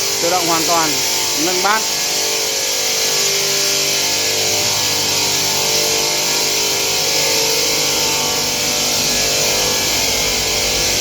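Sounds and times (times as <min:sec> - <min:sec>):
stone-cutting machinery hiss: 0:00.0 - 0:02.2
steady motor tones: 0:00.0 - 0:11.0.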